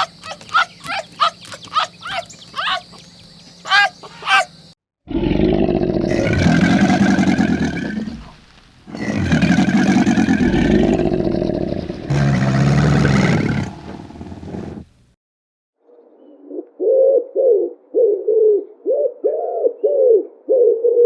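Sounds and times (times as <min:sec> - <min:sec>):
animal long low calls: 0:00.0 - 0:13.9.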